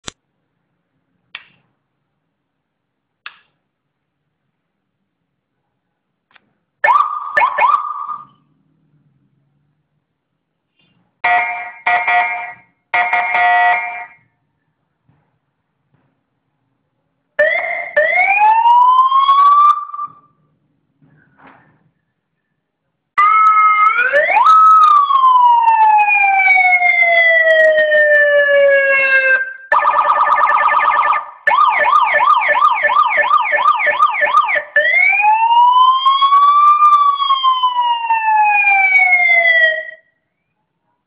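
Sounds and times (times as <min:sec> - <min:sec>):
electronic siren wailing and yelping: 0:06.9 - 0:08.4, 0:17.4 - 0:20.2, 0:23.2 - 0:40.0.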